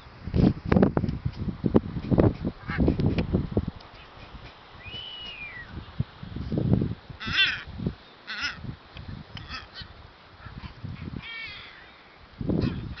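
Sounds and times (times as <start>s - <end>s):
seabirds cawing: 7.2s - 8.6s, 9.4s - 10.6s, 11.2s - 12.1s.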